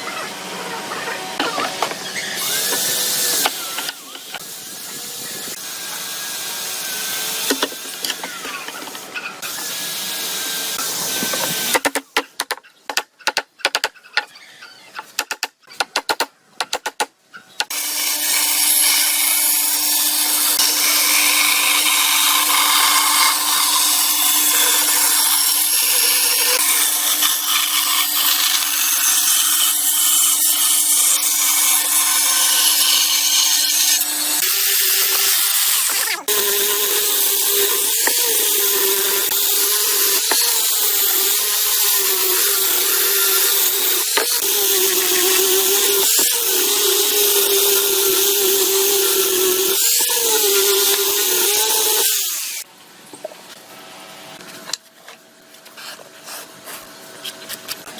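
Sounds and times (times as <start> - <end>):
power tool motor cutting wood: 1.4 - 11.9, 17.7 - 52.7.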